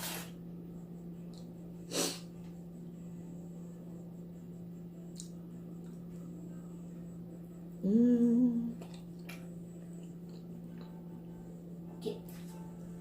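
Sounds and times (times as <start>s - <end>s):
steady low hum: 0.0s - 13.0s
person sniffing: 1.9s - 2.3s.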